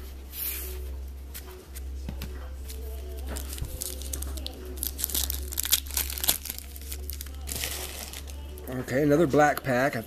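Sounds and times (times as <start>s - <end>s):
steady low hum: 0.0s - 10.0s
foil wrapper crinkling and tearing: 3.2s - 8.4s.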